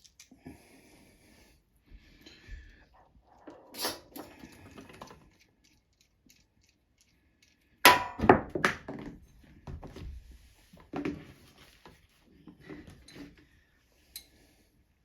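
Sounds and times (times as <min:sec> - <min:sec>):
small parts and tools clattering: 0:00.0 - 0:00.4, 0:03.0 - 0:09.4.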